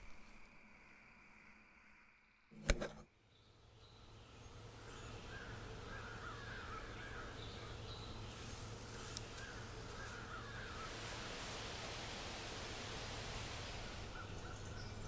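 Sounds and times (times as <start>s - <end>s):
outdoor background hiss: 0.0s - 15.0s
bird warbling: 13.8s - 15.0s.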